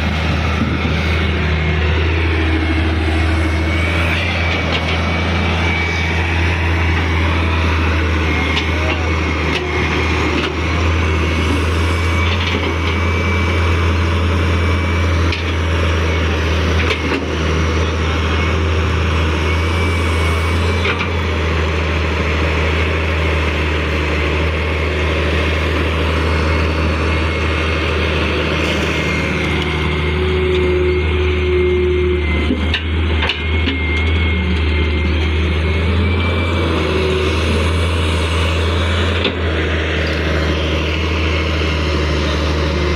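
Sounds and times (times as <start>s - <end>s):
excavator engine running under load: 0.0s - 42.9s.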